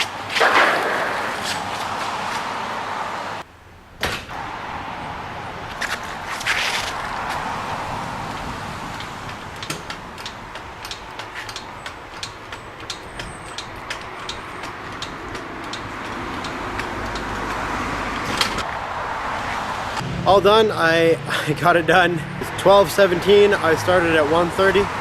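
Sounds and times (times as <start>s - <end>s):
steady background noise: 0.0s - 25.0s
sharp clicks and taps: 8.3s - 17.7s.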